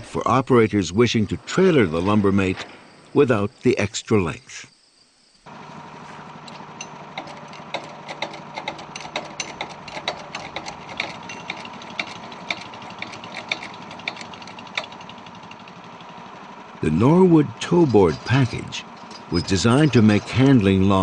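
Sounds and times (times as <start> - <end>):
small engine running: 5.5 - 21.0.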